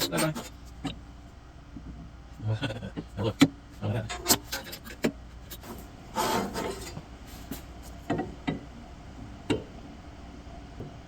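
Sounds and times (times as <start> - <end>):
hands scraping metal: 4.0 - 7.6.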